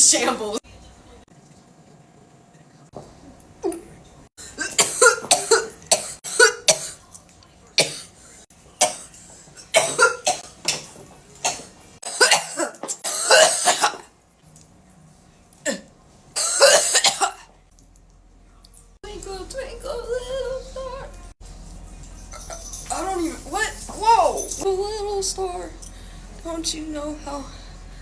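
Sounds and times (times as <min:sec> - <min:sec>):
person coughing hard: 0:04.4 - 0:07.0, 0:07.8 - 0:08.1, 0:08.8 - 0:10.4, 0:11.4 - 0:14.1, 0:15.7 - 0:17.5.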